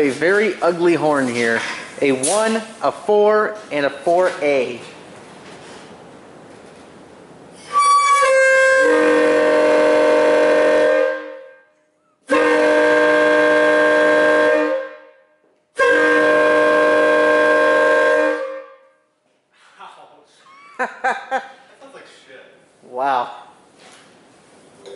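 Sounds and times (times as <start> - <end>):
train air horn blasts: 7.6 - 19.2.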